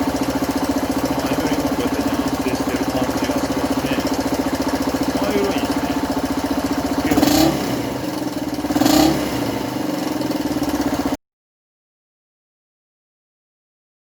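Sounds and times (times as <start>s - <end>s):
motorcycle engine idling: 0.0s - 11.2s.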